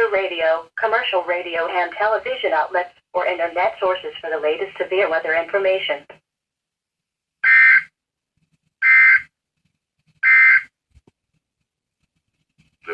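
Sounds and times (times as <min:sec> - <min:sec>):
two-tone digital screeching bursts: 0:10.2 - 0:10.6.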